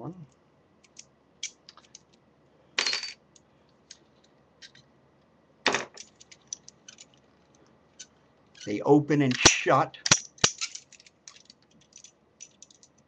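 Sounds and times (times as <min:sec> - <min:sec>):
metal padlocks and keys rattling: 0:05.9 - 0:08.7, 0:10.1 - 0:13.0.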